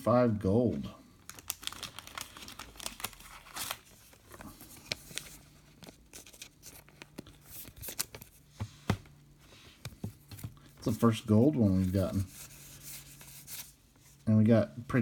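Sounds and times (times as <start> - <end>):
trading cards shuffling: 1.4 - 14.2.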